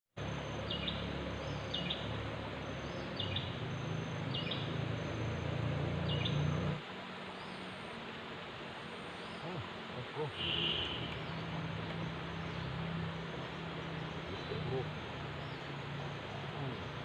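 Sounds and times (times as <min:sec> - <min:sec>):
bird calling: 0:09.1 - 0:17.0.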